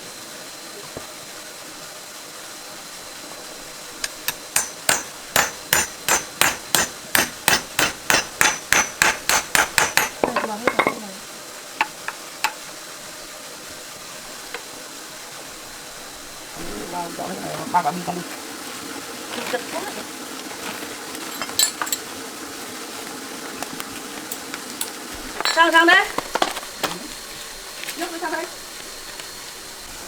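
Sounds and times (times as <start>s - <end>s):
hammer striking metal: 4.0s - 11.0s.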